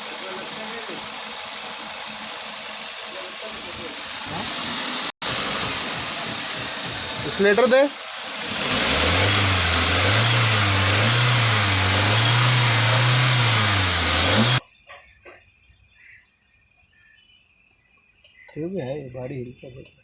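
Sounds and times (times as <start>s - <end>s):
car engine revving: 0.0s - 14.6s.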